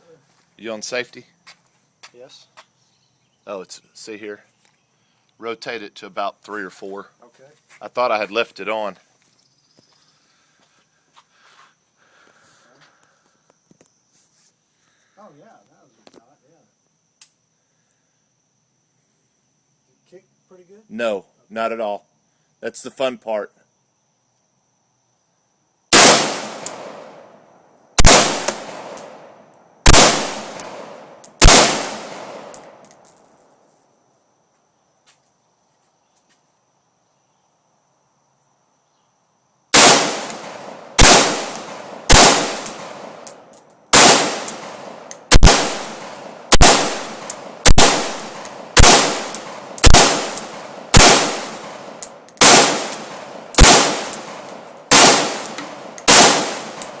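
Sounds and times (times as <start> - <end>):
rifle shots echoing: 25.9 - 27.3, 28.0 - 32.8, 39.8 - 43.3, 43.9 - 57.0.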